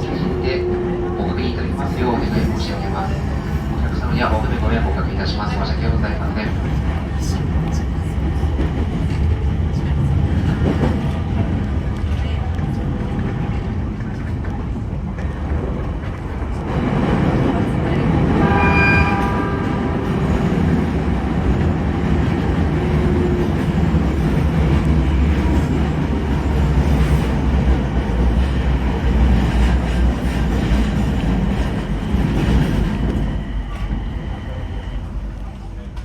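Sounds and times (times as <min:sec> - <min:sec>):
train wheels rumbling: 0:00.0 - 0:36.0
brief high-pitched tone: 0:18.4 - 0:19.8.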